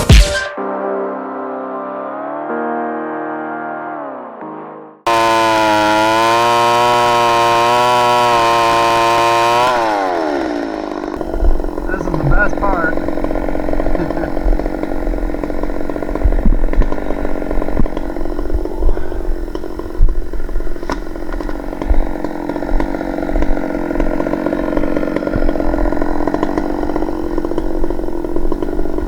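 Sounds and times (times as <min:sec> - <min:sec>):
chainsaw ripping along a log: 0:05.1 - 0:29.0.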